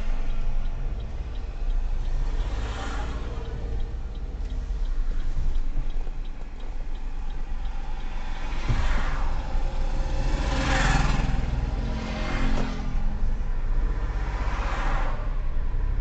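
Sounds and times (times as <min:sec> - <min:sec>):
road noise: 0:00.0 - 0:16.0
vehicle engine rumble: 0:00.0 - 0:16.0
faint regular ticks: 0:00.1 - 0:08.6.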